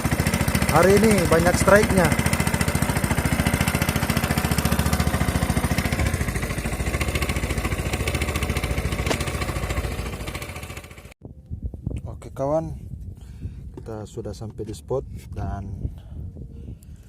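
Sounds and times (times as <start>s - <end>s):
small boat engine chugging: 0.0s - 11.2s.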